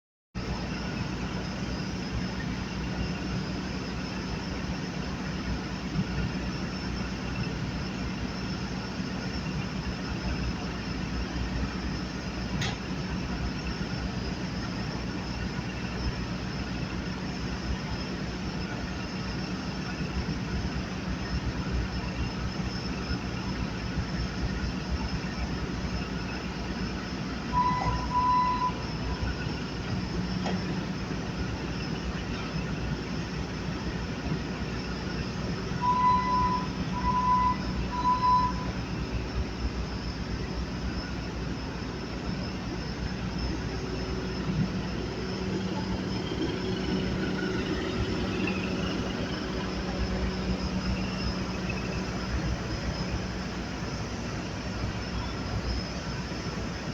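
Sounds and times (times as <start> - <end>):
skid steer engine droning: 0.4 - 56.9
short high-pitched beep: 27.5 - 28.9, 35.8 - 38.8.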